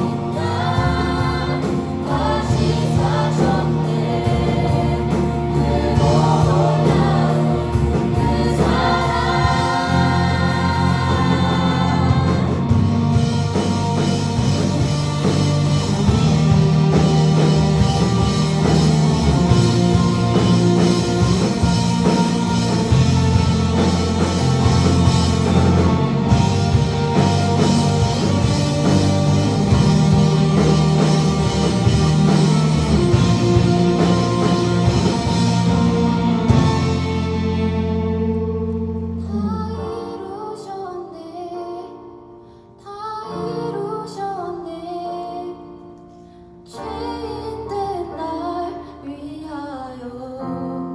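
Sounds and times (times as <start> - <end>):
live rock band playing: 0.0 - 39.2
drums: 0.0 - 39.7
guitar: 0.0 - 40.2.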